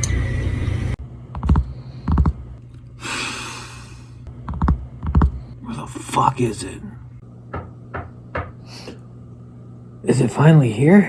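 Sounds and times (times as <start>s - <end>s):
sharp knocks: 7.5s - 8.6s.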